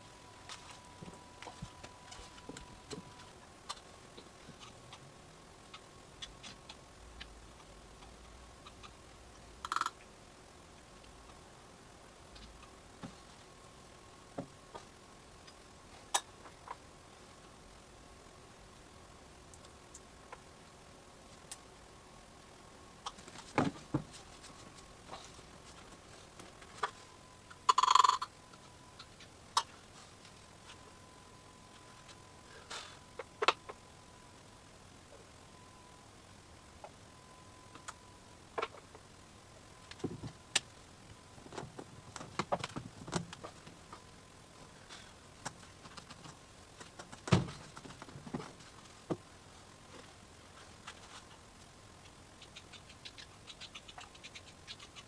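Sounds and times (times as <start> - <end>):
faint steady high tone: 0.0 - 10.0, 15.4 - 42.1.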